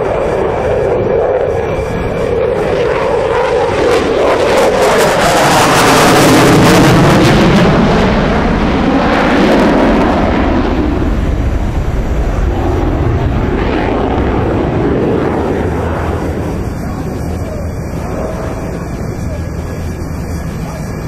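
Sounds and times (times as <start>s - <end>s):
jet engines flying past: 0.0s - 21.0s.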